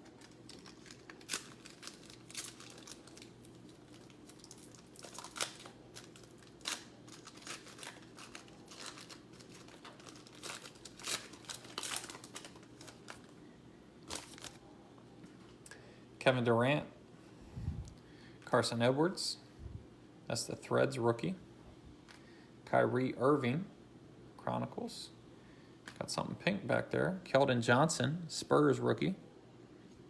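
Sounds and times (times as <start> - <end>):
wrapper crinkling and tearing: 0.0 - 13.4, 14.0 - 14.6.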